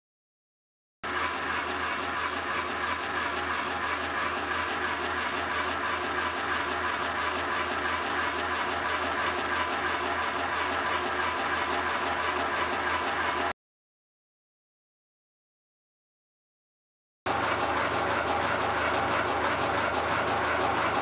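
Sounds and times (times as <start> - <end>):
milling machine running: 1.0 - 13.5, 17.3 - 21.0.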